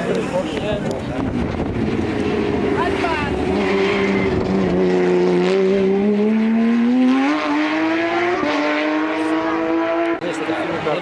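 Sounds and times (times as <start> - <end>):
car engine accelerating hard: 0.4 - 11.0.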